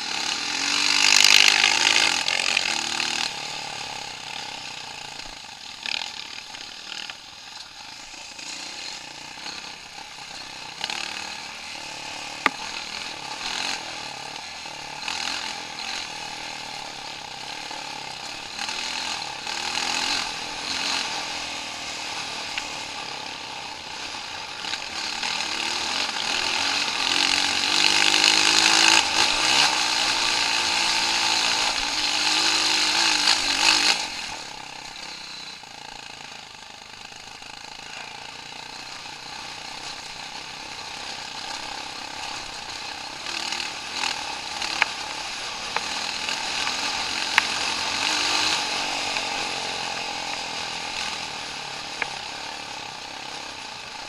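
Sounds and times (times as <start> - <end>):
vehicle engine revving: 0.0 - 7.2, 24.6 - 35.5, 37.9 - 54.0.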